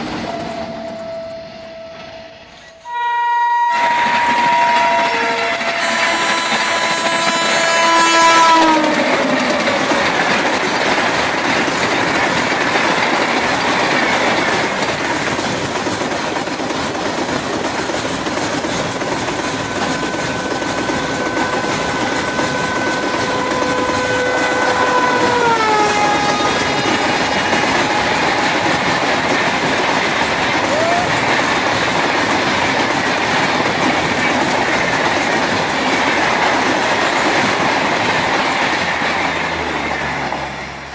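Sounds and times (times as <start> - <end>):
locomotive horn: 0.2 - 9.4, 19.4 - 29.0
freight wagons rumbling and clattering: 8.8 - 24.9.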